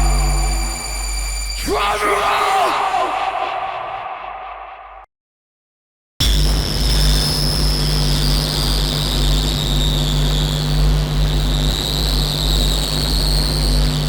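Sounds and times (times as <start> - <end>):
low hum: 0.0 - 1.8
high whistling band: 0.0 - 2.7
harsh industrial noise drone: 0.0 - 5.0.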